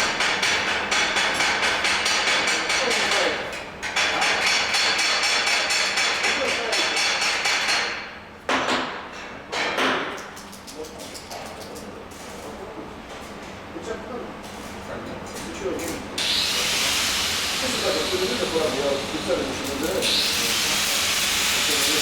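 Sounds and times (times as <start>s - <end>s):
hammer strikes on metal: 0.0s - 10.2s.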